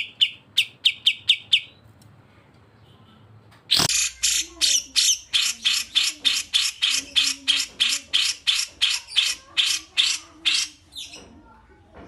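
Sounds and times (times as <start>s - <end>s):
songbird harsh raspy calls: 3.7s - 11.2s.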